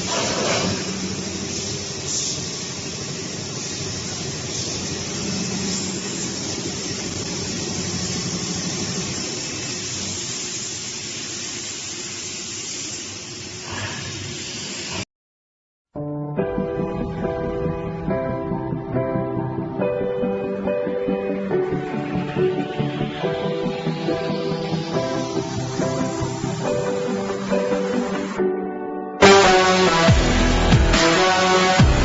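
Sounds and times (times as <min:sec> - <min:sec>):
industrial machinery humming: 0:00.0 - 0:10.6, 0:16.5 - 0:28.5
steady hiss: 0:00.0 - 0:15.0, 0:21.4 - 0:28.4.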